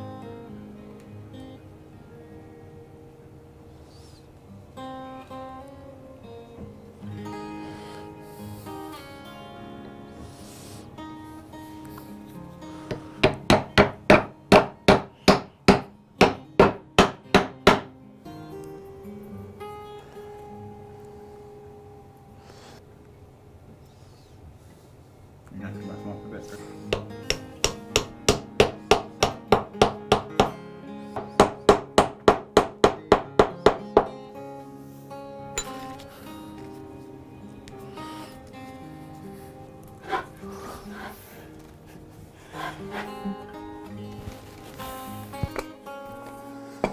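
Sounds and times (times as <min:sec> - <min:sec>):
guitar music: 0:00.0 - 0:22.7, 0:25.6 - 0:46.9
hammer striking: 0:12.9 - 0:17.9, 0:26.9 - 0:30.6, 0:31.2 - 0:34.2.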